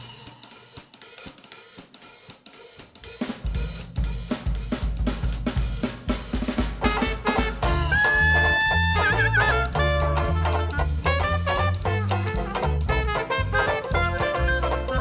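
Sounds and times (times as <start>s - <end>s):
jazz drum kit cymbals and snare: 0.0s - 15.0s
bass drum: 3.4s - 15.0s.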